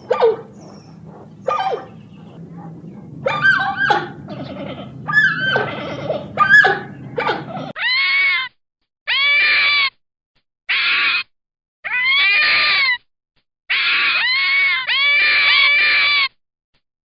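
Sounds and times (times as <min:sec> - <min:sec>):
long arched animal calls: 0:00.0 - 0:07.7
low background hum: 0:00.0 - 0:07.7
animal yelping and whining: 0:00.0 - 0:08.3, 0:13.7 - 0:16.3.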